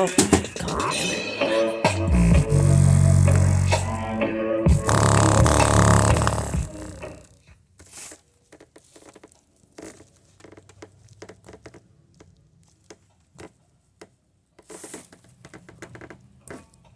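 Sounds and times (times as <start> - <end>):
light clicks and rustles of handling: 7.7 - 16.9.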